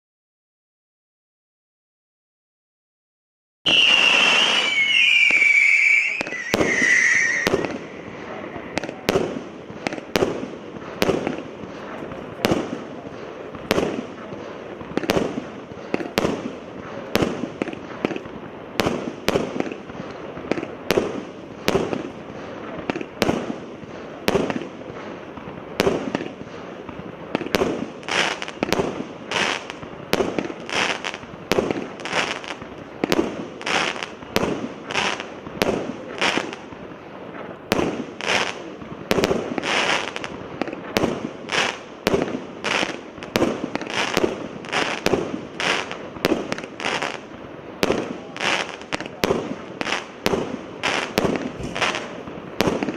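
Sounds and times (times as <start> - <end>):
firework shots banging: 3.7 - 23.6, 37.4 - 47.2, 47.8 - 52.9
hissy firework bursts: 3.7 - 52.9.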